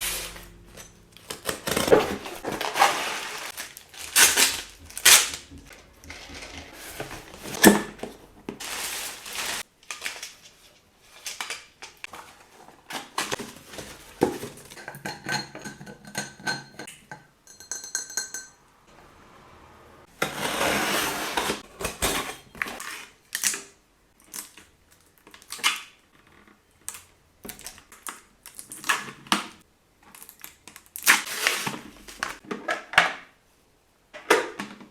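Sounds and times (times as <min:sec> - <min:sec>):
packaging rustling: 0:00.0 - 0:14.8
plastic and glass containers clinking: 0:00.2 - 0:18.6.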